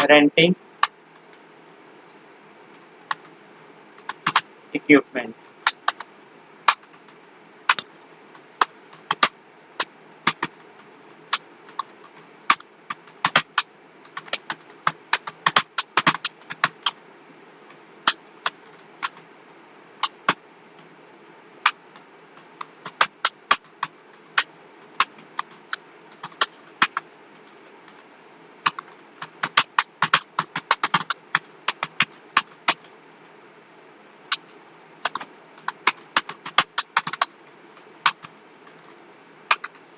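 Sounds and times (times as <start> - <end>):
computer keyboard typing: 4.0 - 4.4, 10.3 - 10.5, 11.3 - 17.0, 22.8 - 27.0, 28.6 - 32.9, 34.3 - 37.3, 38.0 - 38.3, 39.5 - 39.8.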